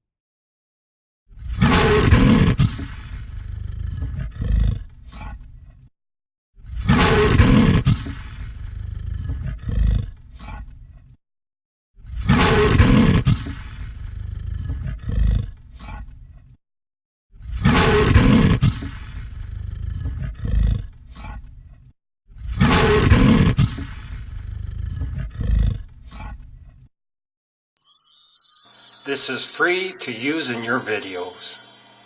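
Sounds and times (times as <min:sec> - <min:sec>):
lion roaring: 0:03.2 - 0:04.8, 0:08.7 - 0:10.1, 0:14.0 - 0:15.5, 0:19.4 - 0:20.9, 0:24.2 - 0:25.9.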